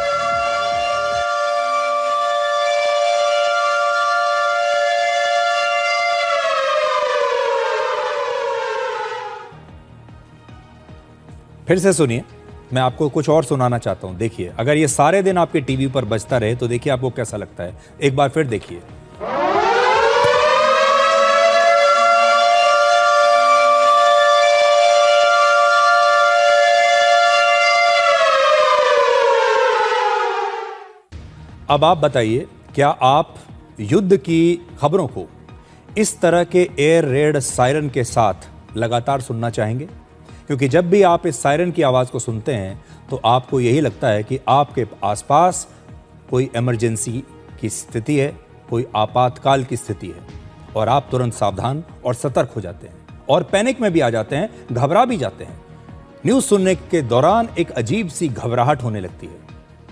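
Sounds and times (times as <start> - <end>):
air-raid siren wailing: 0.0 - 9.8, 19.2 - 31.1.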